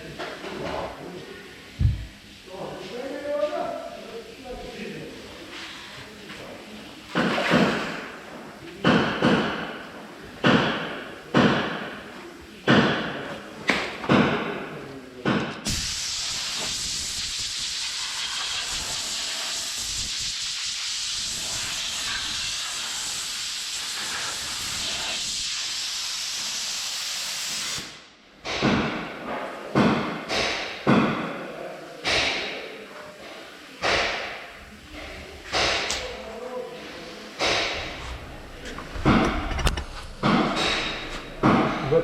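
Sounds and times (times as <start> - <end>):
compressed air hissing from blow gun: 15.6 - 28.0
knocks: 38.6 - 42.0.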